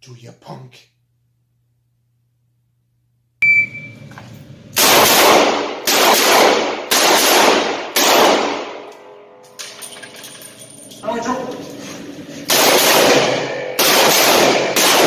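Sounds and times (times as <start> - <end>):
echoing gunshots: 4.8 - 9.4, 12.3 - 15.0.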